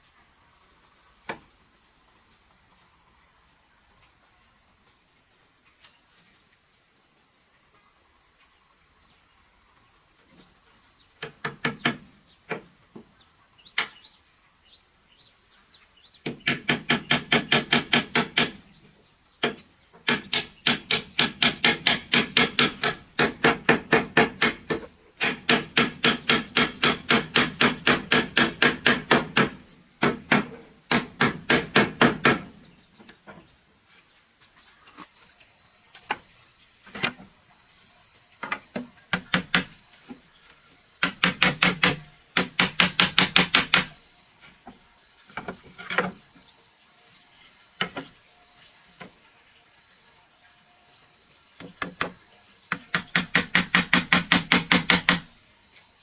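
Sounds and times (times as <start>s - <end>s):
hammer striking wood: 16.2s - 18.6s, 19.4s - 32.5s, 41.0s - 43.9s, 51.8s - 55.3s
insects shrilling: 33.6s - 56.0s.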